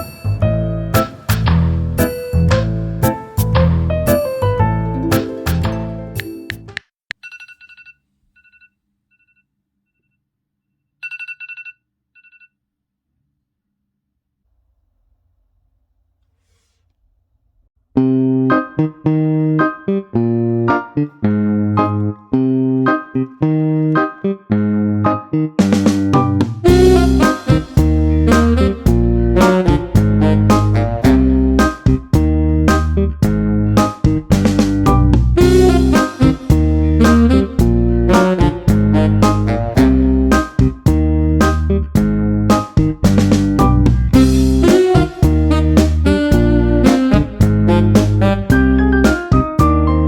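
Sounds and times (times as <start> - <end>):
bouncy instrumental music: 0.0 - 6.9, 18.0 - 50.0.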